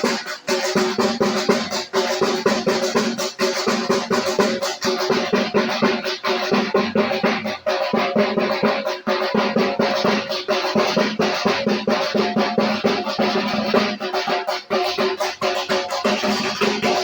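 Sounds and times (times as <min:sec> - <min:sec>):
music with fast drumming: 0:00.0 - 0:17.0.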